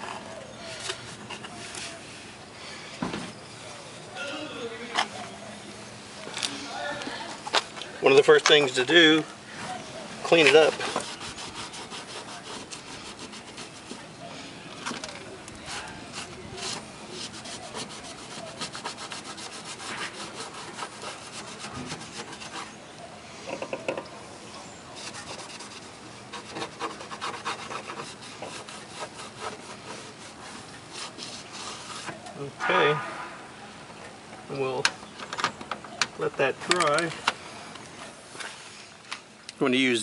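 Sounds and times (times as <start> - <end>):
rubbing scrubbing strokes: 10.3 - 14.1, 15.6 - 22.8, 25.0 - 32.2.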